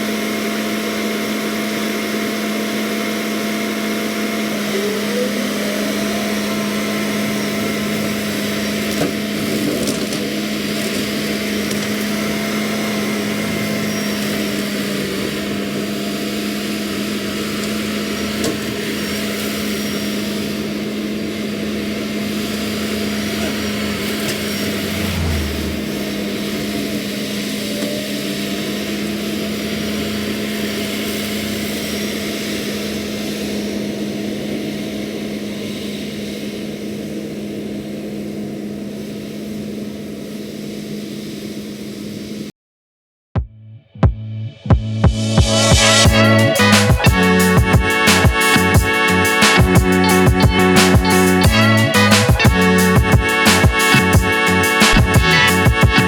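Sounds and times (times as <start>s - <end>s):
skid steer running: 0.0s - 40.4s, 45.8s - 56.0s
brush cutter spinning: 3.9s - 27.4s
low rumble: 24.1s - 26.6s, 43.4s - 47.9s.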